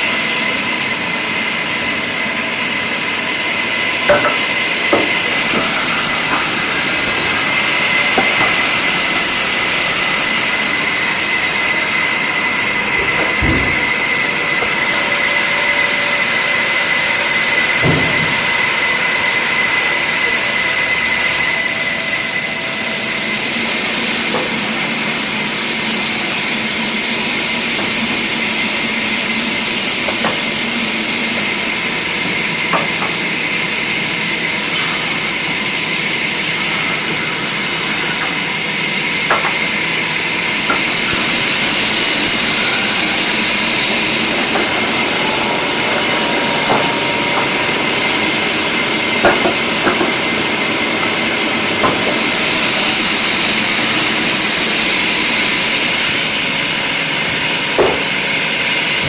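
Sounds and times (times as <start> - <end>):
woodworking machine whining: 0.0 - 59.0
sharp clicks and knocks: 13.0 - 14.0.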